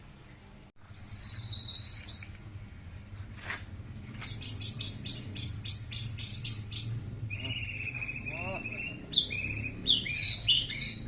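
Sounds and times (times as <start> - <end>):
bird high trill: 0.9 - 2.4, 4.2 - 11.0.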